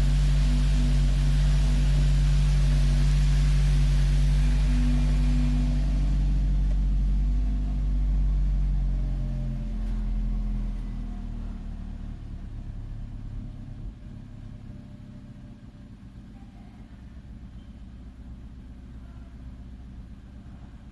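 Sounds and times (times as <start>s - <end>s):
car engine grinding hum: 0.0s - 16.4s
car engine idling: 0.0s - 20.9s.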